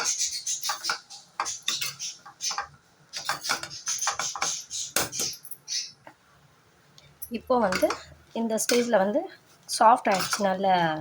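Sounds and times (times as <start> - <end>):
spatula scraping frying pan: 0.0 - 5.2, 9.8 - 11.0.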